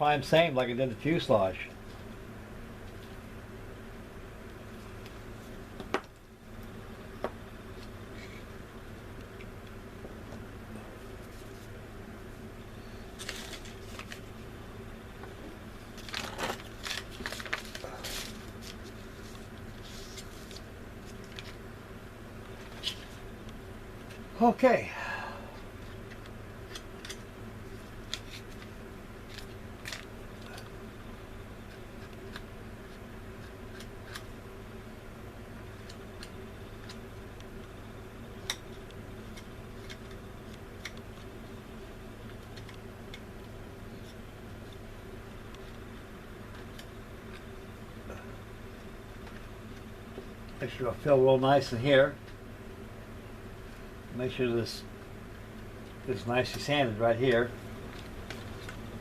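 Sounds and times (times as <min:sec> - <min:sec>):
steady low hum: 0:00.0 - 0:59.0
plastic parts rustling and scraping: 0:13.1 - 0:14.3, 0:15.9 - 0:21.6.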